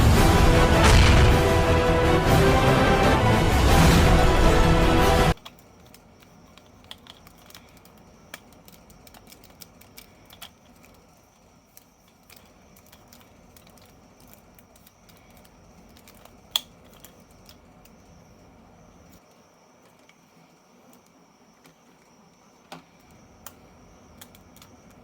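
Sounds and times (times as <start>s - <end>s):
plastic toys clicking: 5.4s - 18.1s, 22.7s - 25.0s.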